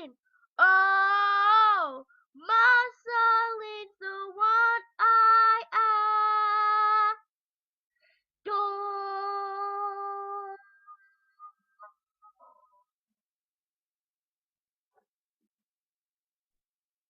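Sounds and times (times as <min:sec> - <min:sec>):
girl singing unaccompanied: 0:00.0 - 0:07.3, 0:08.4 - 0:10.8.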